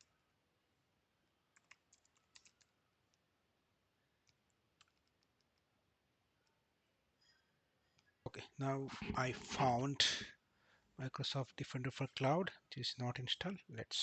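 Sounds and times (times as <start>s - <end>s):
faint keyboard typing: 1.4s - 3.3s, 4.0s - 6.6s
mouse clicks: 4.2s - 5.7s.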